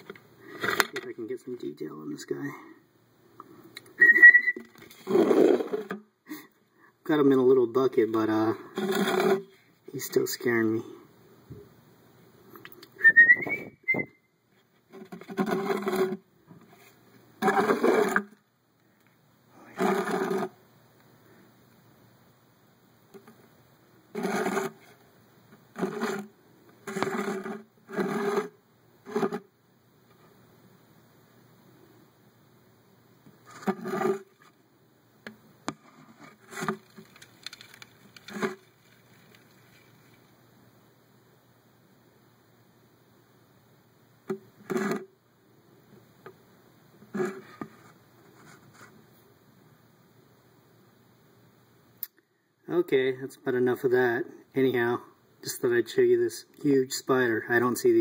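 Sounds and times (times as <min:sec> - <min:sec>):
faint steady hiss: 0:00.0 - 0:58.0
rustles: 0:03.5 - 0:06.8, 0:35.3 - 0:40.4.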